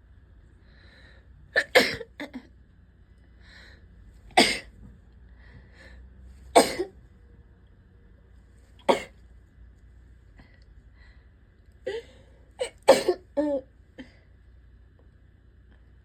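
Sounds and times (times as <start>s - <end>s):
faint breaths: 0.5s - 1.5s, 3.0s - 7.2s, 9.8s - 12.6s
person sneezing and coughing: 1.6s - 2.5s, 4.3s - 4.7s, 6.6s - 6.9s, 8.8s - 9.2s, 12.6s - 13.7s.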